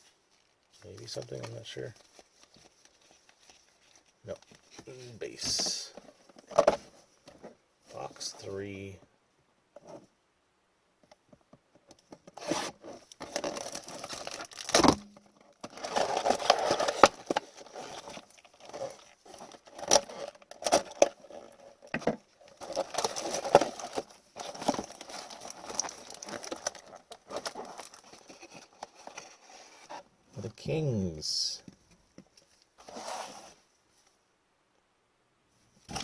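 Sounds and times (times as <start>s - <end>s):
plastic wrapping tearing and crinkling: 12.3s - 29.8s.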